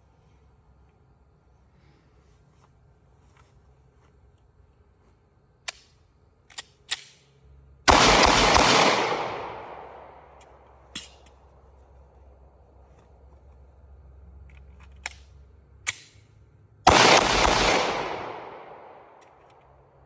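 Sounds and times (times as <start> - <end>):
pistol shot: 7.9 - 10.2, 16.9 - 19.2.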